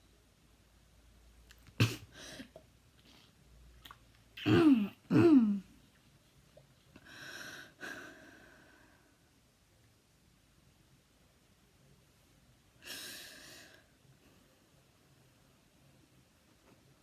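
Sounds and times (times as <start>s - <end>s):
person coughing: 1.8s - 2.6s, 4.4s - 5.7s
noisy breath: 7.0s - 9.2s.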